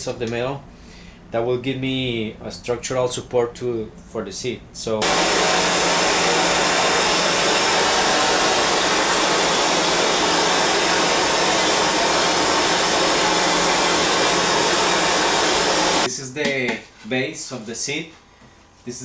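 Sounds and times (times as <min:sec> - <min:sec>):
blower rushing air: 0:05.0 - 0:16.1.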